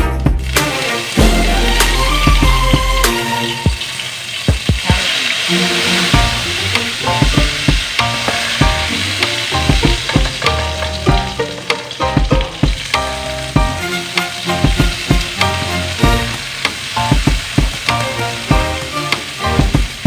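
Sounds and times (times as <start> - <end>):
chicken sizzling in a pan: 0.4 - 20.0
utensil clicking against pan: 9.2 - 13.0.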